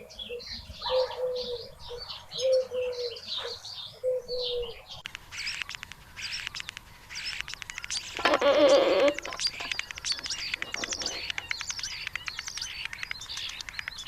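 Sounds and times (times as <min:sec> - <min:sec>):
bird cooing: 0:00.0 - 0:05.6, 0:08.1 - 0:12.0
small birds chirping: 0:00.0 - 0:14.0
bird rattling trills: 0:05.0 - 0:14.0.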